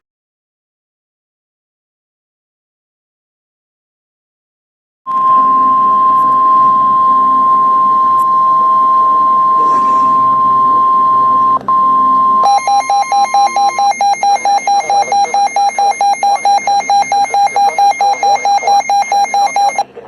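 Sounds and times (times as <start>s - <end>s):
rapid pulsing alert beeps: 5.1s - 19.9s
steady high-pitched alarm tone: 5.1s - 19.9s.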